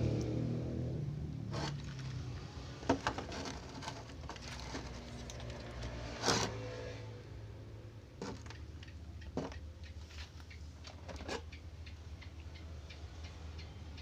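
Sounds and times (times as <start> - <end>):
plastic clicks and knocks: 8.2 - 9.7.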